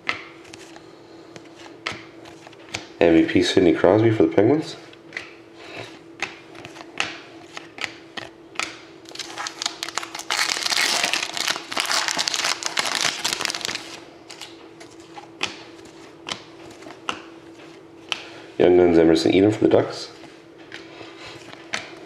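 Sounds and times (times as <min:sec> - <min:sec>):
faint steady hum: 0:00.0 - 0:22.0
cards being handled: 0:06.2 - 0:18.3
card pack wrapper crinkling: 0:09.0 - 0:14.5.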